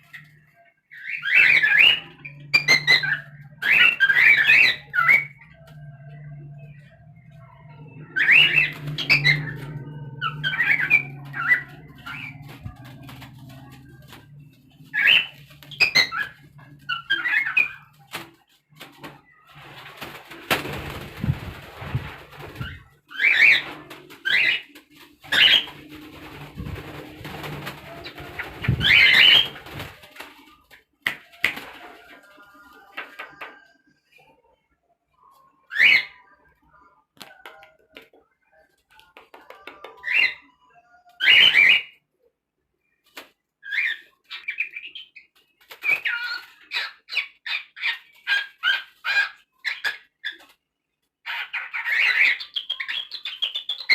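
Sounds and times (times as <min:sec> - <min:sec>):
rustling noise: 0:08.8 - 0:17.1, 0:17.8 - 0:32.9.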